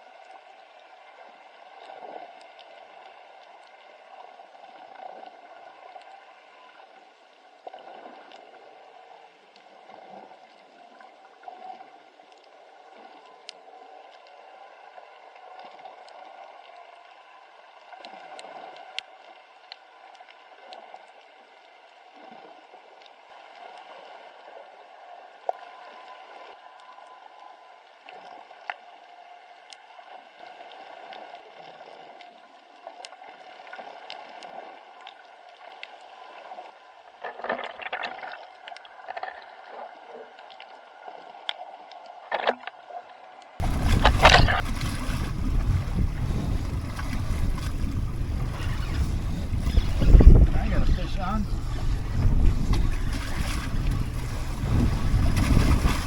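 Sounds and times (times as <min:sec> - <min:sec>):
sharp underwater clicks: 0:37.2 - 0:39.7, 0:43.6 - 0:50.5.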